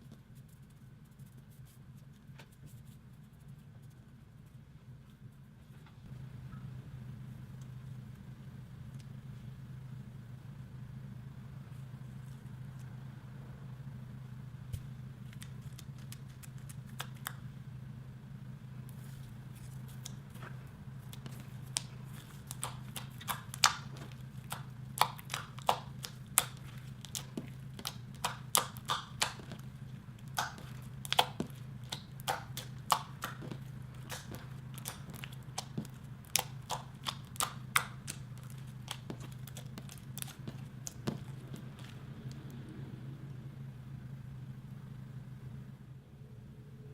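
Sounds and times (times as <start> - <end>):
steady low hum: 0.0 - 46.9
slime clicking and popping: 21.1 - 42.5.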